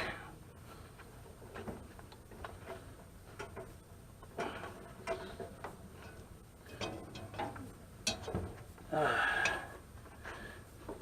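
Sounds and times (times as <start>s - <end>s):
hand tools tapping copper lines: 1.5s - 8.8s.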